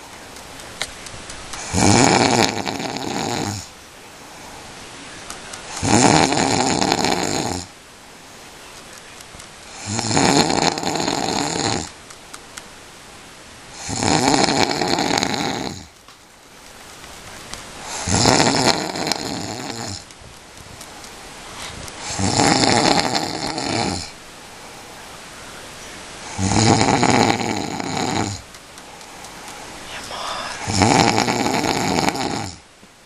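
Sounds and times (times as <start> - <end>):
person snoring loudly: 1.6 - 3.7, 5.8 - 7.7, 9.8 - 11.9, 13.8 - 15.9, 17.8 - 20.0, 22.0 - 24.1, 26.3 - 28.4, 30.1 - 32.6.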